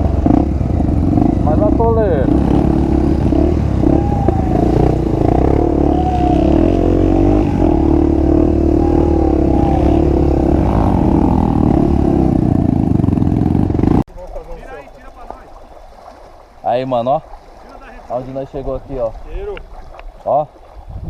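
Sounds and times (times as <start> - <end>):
motorcycle engine revving: 0.0 - 14.1.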